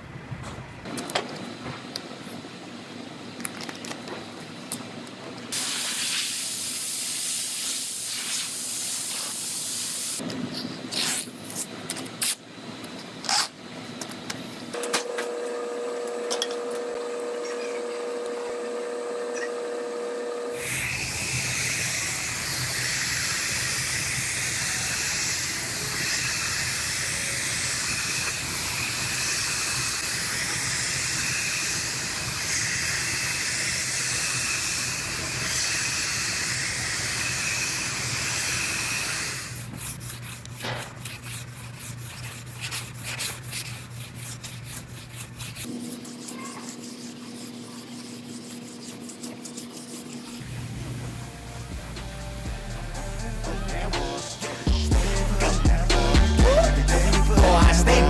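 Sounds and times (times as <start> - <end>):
compressed air hissing: 5.5 - 10.2, 20.6 - 39.7
pitched air tool hum: 14.8 - 45.9, 50.4 - 58.0.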